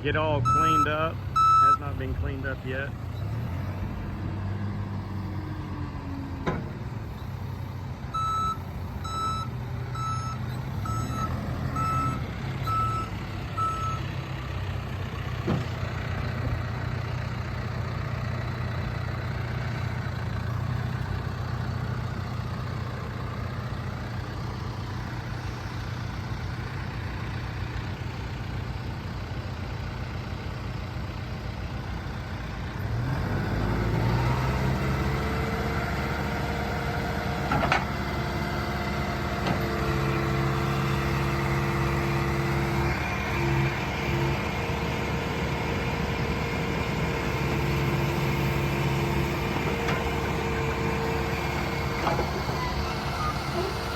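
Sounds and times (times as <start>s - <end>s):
diesel engine running: 0.0s - 53.9s
backup alarm beeping: 0.4s - 1.9s, 8.2s - 14.0s.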